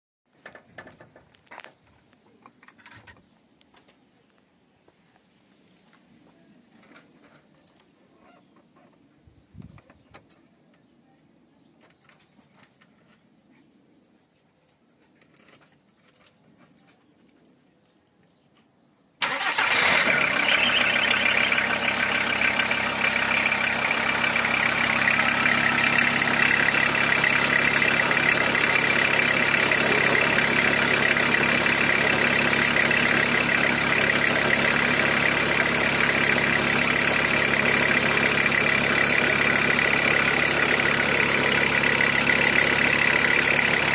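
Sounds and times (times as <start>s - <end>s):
diesel engine starting and idling: 19.2s - 43.9s.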